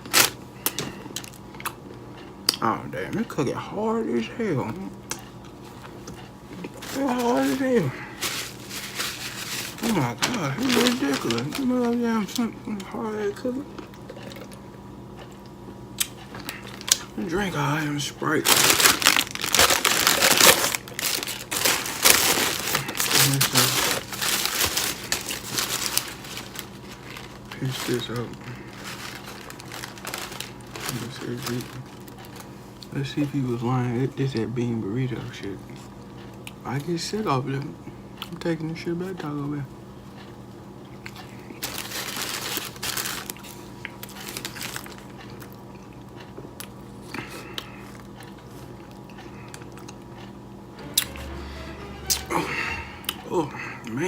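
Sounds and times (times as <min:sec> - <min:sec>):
paper wrapper crinkling: 0:00.0 - 0:00.4, 0:06.6 - 0:12.5, 0:16.5 - 0:32.5, 0:41.6 - 0:45.2
clicks and rustles of food handling: 0:00.0 - 0:02.6, 0:05.1 - 0:12.9, 0:13.7 - 0:33.4, 0:40.0 - 0:50.3
steady low hum: 0:00.0 - 0:54.0.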